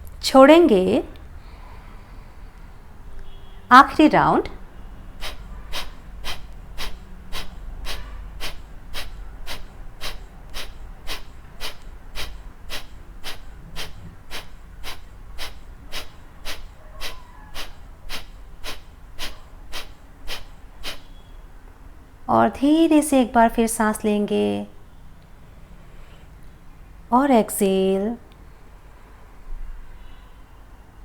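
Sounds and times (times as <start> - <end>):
forceful nasal exhalations: 5.1 - 21.4.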